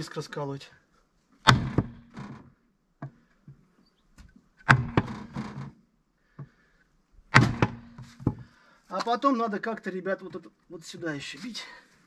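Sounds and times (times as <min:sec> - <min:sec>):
sledgehammer blows on wooden board: 0:01.4 - 0:03.2, 0:04.6 - 0:05.7, 0:07.3 - 0:08.5.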